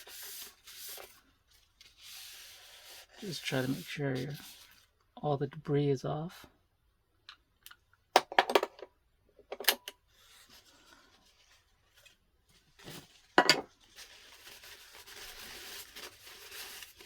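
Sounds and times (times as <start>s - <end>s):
faint rubbing: 1.8s - 4.8s.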